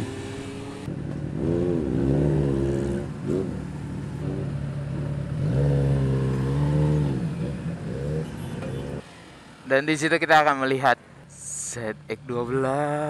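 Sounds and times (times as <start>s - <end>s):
motorcycle engine revving: 0.0s - 9.0s.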